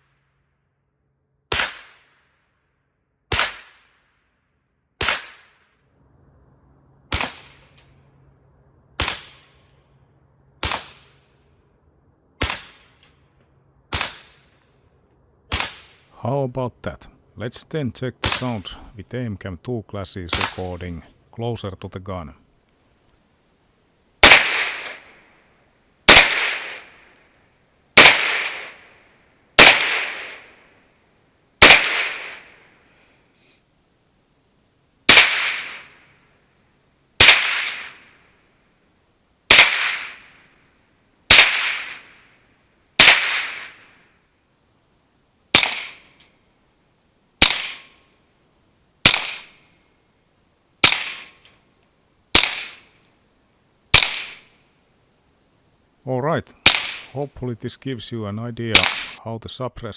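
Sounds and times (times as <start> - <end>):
suppressed gunshots: 7.1 - 7.8, 9.0 - 9.7, 10.6 - 11.2, 12.4 - 13.1, 13.9 - 14.5, 15.5 - 16.0, 24.2 - 25.2, 26.1 - 27.0, 28.0 - 28.9, 29.6 - 30.6, 31.6 - 32.5, 35.1 - 36.0, 37.2 - 38.1, 39.5 - 40.3, 41.3 - 42.1, 43.0 - 43.9, 45.5 - 46.2, 47.4 - 47.9, 49.0 - 49.6, 50.8 - 51.4, 52.3 - 52.9, 53.9 - 54.5, 56.6 - 57.1, 58.8 - 59.2.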